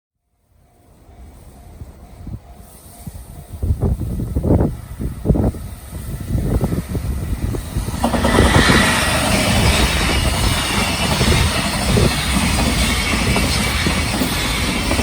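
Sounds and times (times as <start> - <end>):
loud rushing rail noise: 0.3 - 15.0
train wheels clattering over rails: 6.4 - 15.0.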